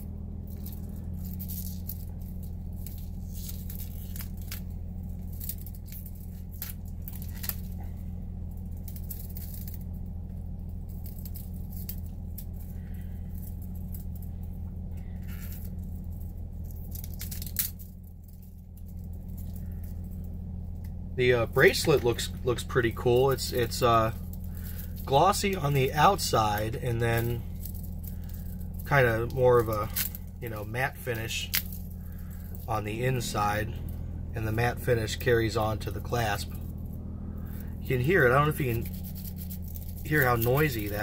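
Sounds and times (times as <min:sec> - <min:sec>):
steady low hum: 0:00.0 - 0:41.0
metal bracelet links rattling: 0:00.5 - 0:07.8, 0:08.5 - 0:09.9, 0:10.9 - 0:20.3, 0:26.5 - 0:28.9, 0:38.6 - 0:41.0.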